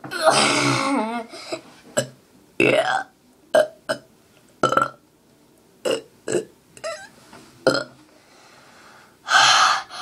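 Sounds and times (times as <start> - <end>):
person burping: 0.0 - 1.3, 2.0 - 4.0, 4.6 - 5.0, 5.8 - 7.1, 7.7 - 7.9.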